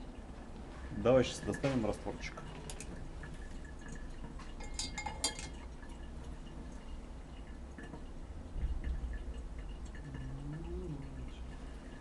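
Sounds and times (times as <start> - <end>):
light liquid sounds: 0.0 - 12.0
glass vessel clinking: 3.7 - 5.6.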